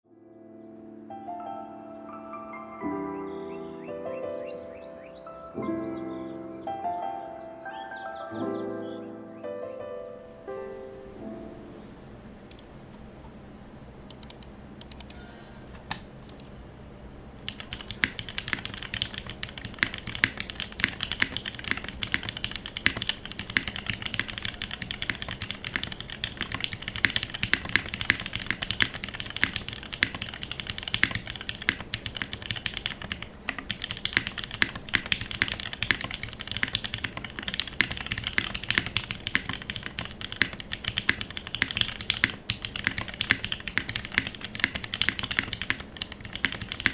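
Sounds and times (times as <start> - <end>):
typing on mechanical keyboard: 14.1 - 15.2, 17.4 - 46.9.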